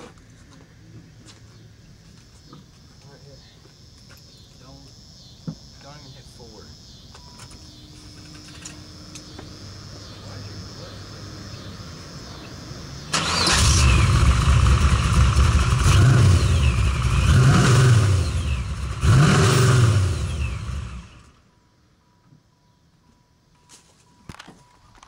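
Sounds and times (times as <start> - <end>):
supercharger whine: 7.4 - 21.5
car engine revving: 13.1 - 21.3.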